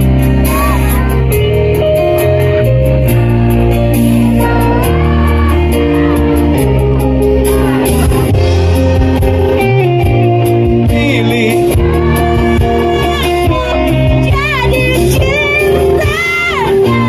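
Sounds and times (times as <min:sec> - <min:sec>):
live band music: 0:00.0 - 0:17.0
person singing: 0:04.0 - 0:08.0, 0:10.7 - 0:17.0.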